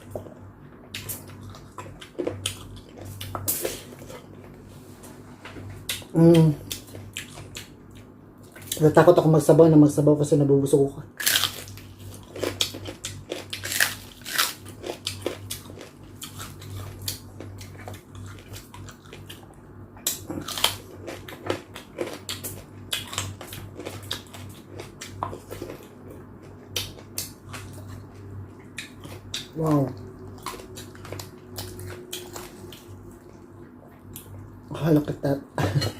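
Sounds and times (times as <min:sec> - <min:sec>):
biting and chewing food: 0:00.0 - 0:04.6, 0:11.2 - 0:34.6.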